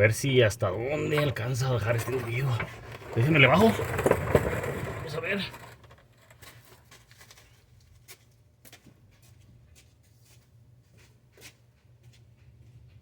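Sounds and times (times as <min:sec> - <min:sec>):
floor jack clicks and creaks: 0:01.2 - 0:06.8.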